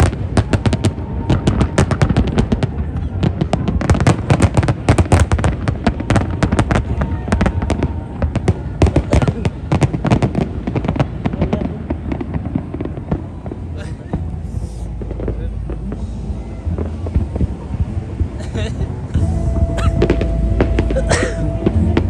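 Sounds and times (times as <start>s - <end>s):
fireworks bangs and crackles: 0.0s - 22.0s
low rumble: 9.5s - 22.0s.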